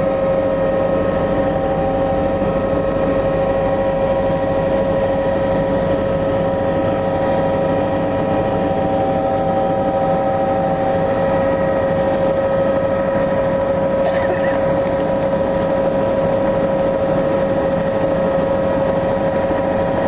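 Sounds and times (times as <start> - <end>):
helicopter engine and rotors droning: 0.0 - 20.0.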